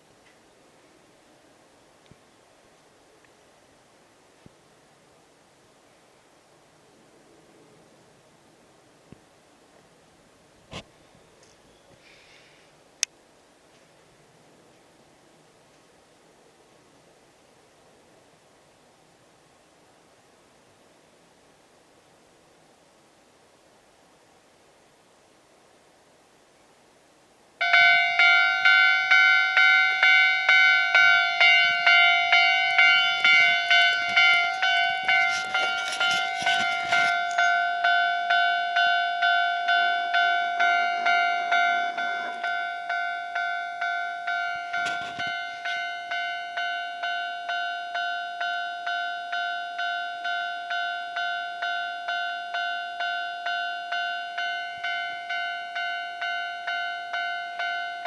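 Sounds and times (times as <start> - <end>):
level-crossing warning bell: 27.6 - 58.0.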